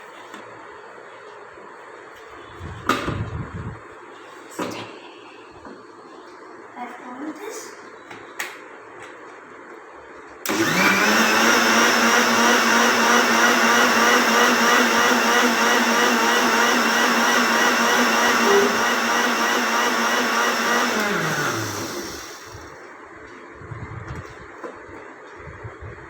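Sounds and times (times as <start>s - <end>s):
electric blender motor: 10.5s - 22.8s.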